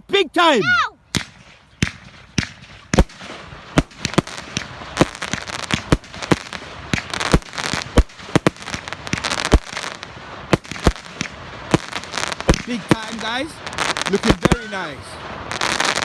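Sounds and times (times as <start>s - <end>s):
fireworks crackling: 0.5s - 16.0s
fireworks bangs: 0.7s - 16.0s.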